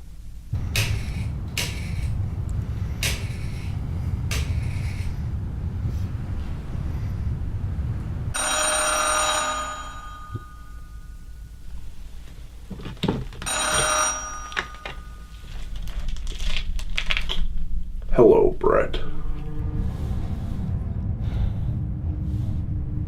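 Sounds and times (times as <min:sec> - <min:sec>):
low rumble: 0:00.0 - 0:13.4, 0:14.2 - 0:23.0
telephone ringing: 0:08.4 - 0:11.1, 0:13.4 - 0:15.4.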